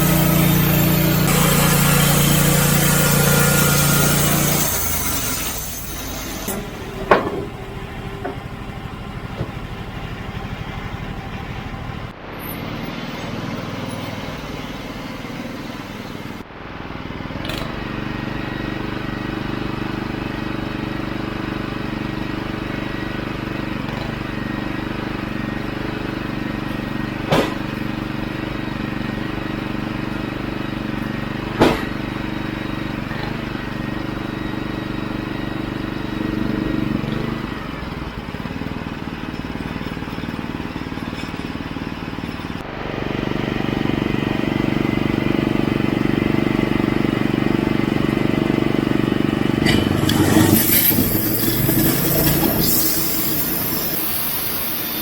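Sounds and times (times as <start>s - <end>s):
sawmill gas engine running: 0.0s - 55.0s
sharp knocks: 6.5s - 7.6s, 27.3s - 27.7s, 31.6s - 31.9s.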